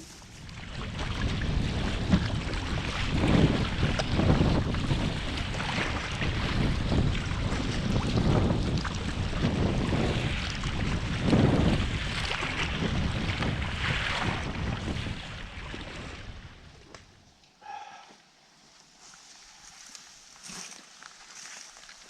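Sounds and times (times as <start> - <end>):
strong wind buffeting microphone: 0.0 - 17.2.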